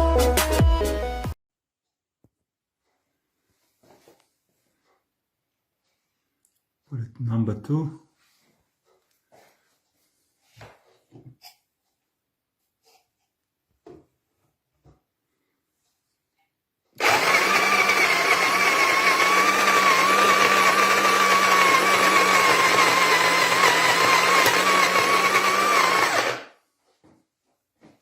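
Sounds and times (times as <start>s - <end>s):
coffee grinder motor whine: 17.0s - 26.6s.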